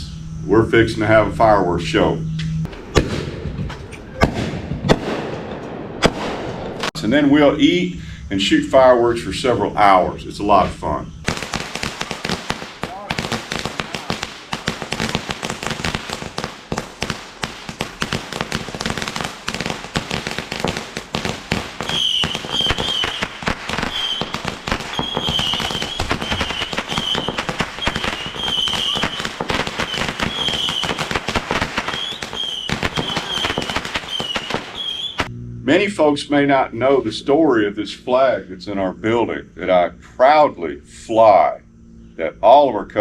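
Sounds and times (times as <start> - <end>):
fireworks crackling: 11.2 - 35.3.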